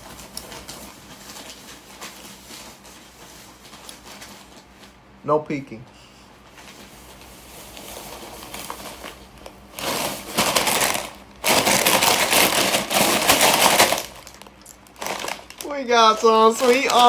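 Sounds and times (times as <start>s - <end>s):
plastic snack bag crinkling: 7.1s - 17.0s.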